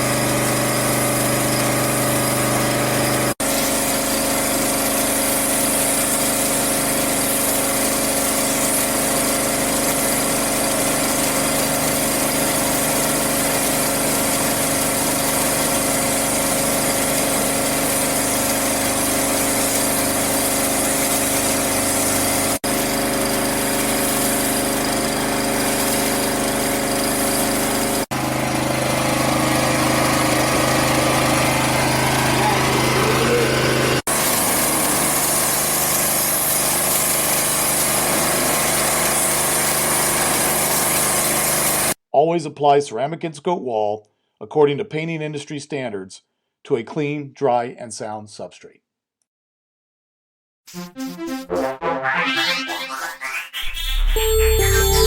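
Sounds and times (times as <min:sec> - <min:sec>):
pressure washer engine running: 0:00.0 - 0:42.0
water jet hissing: 0:00.0 - 0:42.0.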